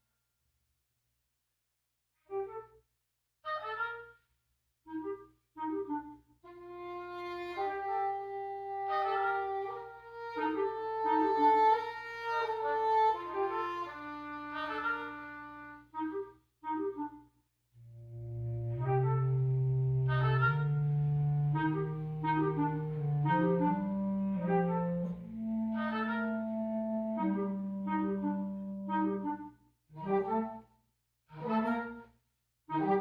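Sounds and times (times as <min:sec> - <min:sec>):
wind quintet playing: 0:04.9 - 0:17.2, 0:17.8 - 0:30.6, 0:31.3 - 0:32.1, 0:32.7 - 0:33.0.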